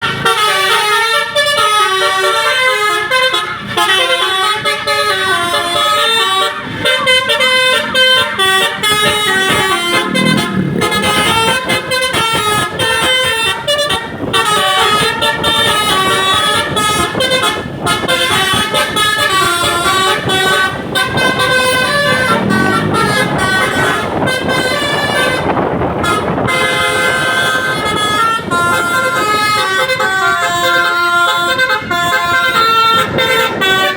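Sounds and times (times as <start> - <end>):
multi-tone bus horn playing a tune: 0.0 - 33.9
vehicle noise: 0.0 - 33.9.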